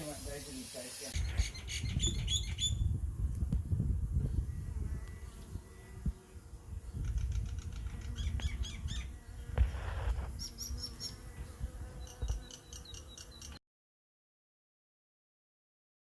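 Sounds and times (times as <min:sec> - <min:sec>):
honeybees buzzing: 0:00.0 - 0:13.6
bird chirping: 0:01.2 - 0:02.8, 0:12.0 - 0:13.6
rustle: 0:03.3 - 0:13.6.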